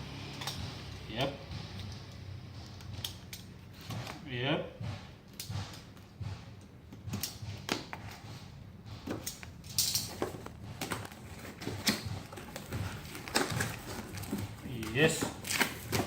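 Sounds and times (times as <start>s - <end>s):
packaging clicks and rustles: 9.1s - 16.0s.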